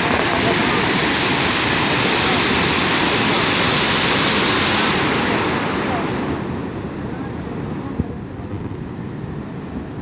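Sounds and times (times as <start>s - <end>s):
waterfall roaring: 0.0s - 6.2s.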